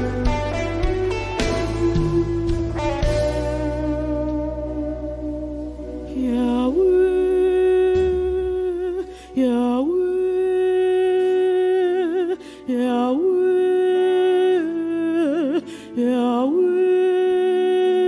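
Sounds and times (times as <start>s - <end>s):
hummed vocal line: 6.0s - 18.0s.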